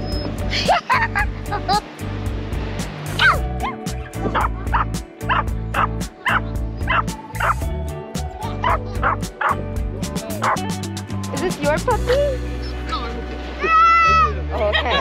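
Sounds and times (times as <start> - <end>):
background music with steady beat: 0.0 - 13.7
puppy yipping: 3.2 - 3.8, 4.4 - 7.6, 8.6 - 9.6.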